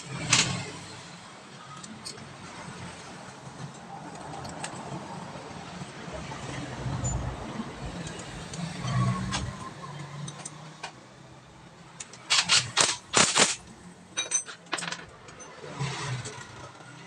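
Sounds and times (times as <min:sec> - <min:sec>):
metal tools and parts clanking: 0:12.0 - 0:16.6.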